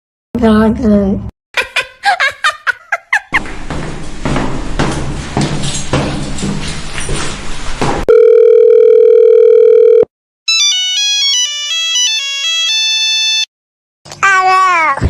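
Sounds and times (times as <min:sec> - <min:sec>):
telephone beep: 0:08.1 - 0:10.1.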